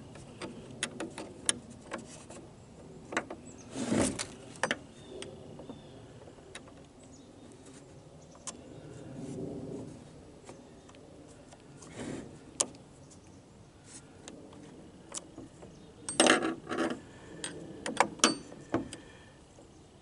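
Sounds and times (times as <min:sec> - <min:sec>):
short scraping rub: 0:03.7 - 0:04.4.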